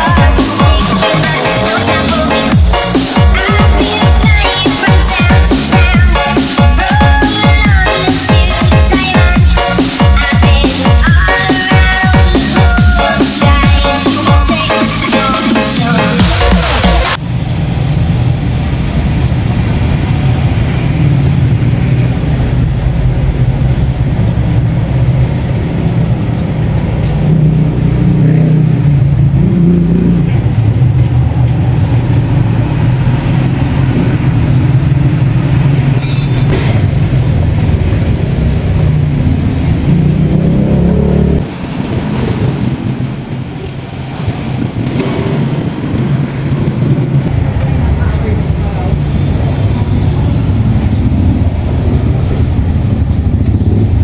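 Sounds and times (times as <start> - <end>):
motorcycle engine running: 17.1 - 43.7, 44.4 - 54.0.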